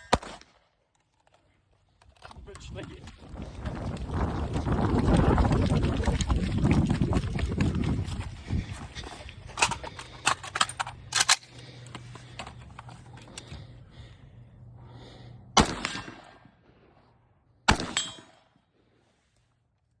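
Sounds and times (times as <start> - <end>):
rifle shots with echo: 0.0 - 0.6, 15.6 - 16.5, 17.7 - 18.4.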